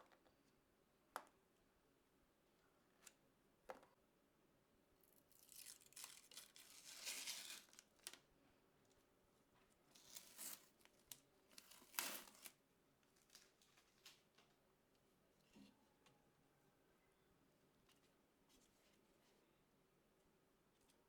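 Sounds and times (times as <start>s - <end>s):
packaging torn and crinkled: 5.3s - 8.2s, 10.0s - 12.6s.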